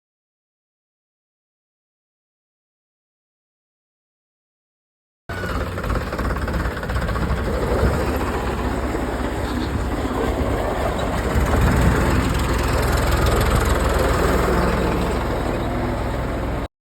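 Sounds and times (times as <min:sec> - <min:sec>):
tractor diesel engine running: 0:05.3 - 0:16.7.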